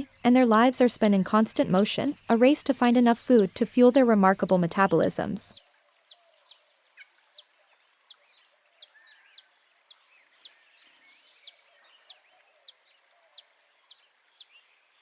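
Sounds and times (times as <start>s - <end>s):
bird chip notes: 0.0s - 5.6s.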